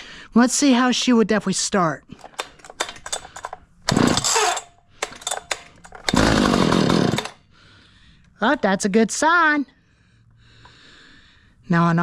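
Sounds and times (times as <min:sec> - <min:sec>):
chainsaw engine turning over: 0:02.2 - 0:07.4
chainsaw starter cord pulls: 0:02.2 - 0:07.4
small clicks of handling saw: 0:02.2 - 0:07.4.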